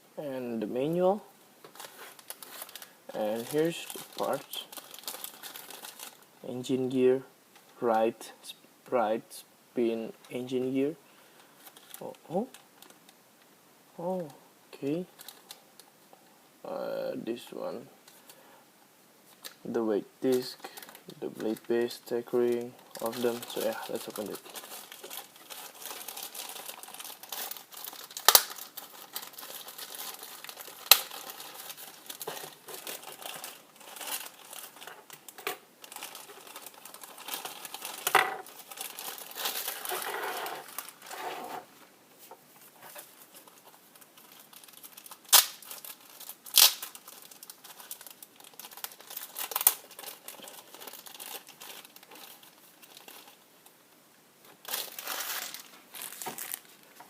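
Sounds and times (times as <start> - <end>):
plastic packaging crinkling and tearing: 1.7 - 6.3, 11.6 - 13.1, 15.2 - 15.9, 20.3 - 41.2, 42.6 - 53.7, 54.4 - 57.0.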